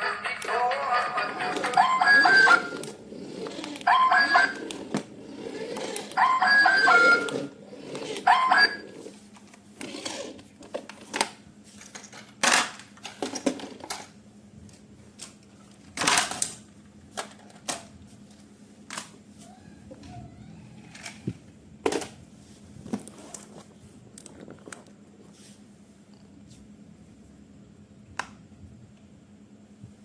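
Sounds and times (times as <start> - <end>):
electronic tune: 0.0 - 2.8, 6.2 - 7.5.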